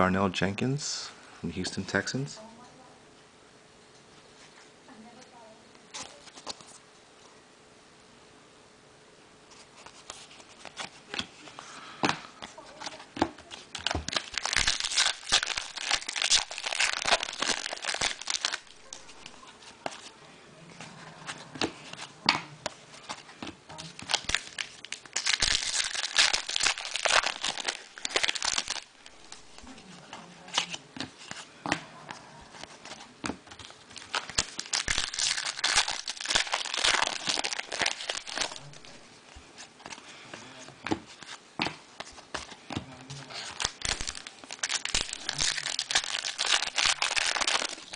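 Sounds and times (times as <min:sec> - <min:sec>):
wrappers crinkling: 0:12.6 - 0:20.2, 0:23.0 - 0:31.5, 0:32.7 - 0:40.2, 0:41.0 - 0:47.9.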